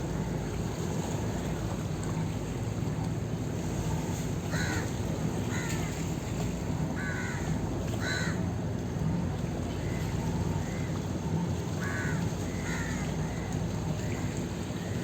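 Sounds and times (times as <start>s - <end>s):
crows cawing: 4.5s - 4.9s, 5.5s - 5.8s, 7.0s - 8.4s, 11.8s - 13.5s.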